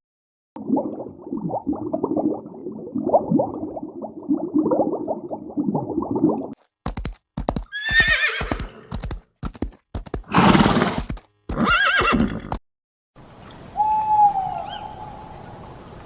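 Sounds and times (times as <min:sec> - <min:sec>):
hooves clip-clopping: 0:06.6 - 0:12.6
horse neighing: 0:07.7 - 0:09.0, 0:10.3 - 0:12.6.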